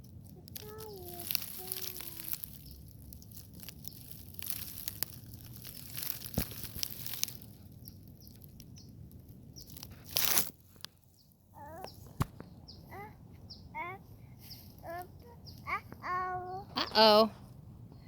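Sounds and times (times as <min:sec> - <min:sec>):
dry forest litter crunching: 0:00.0 - 0:11.4.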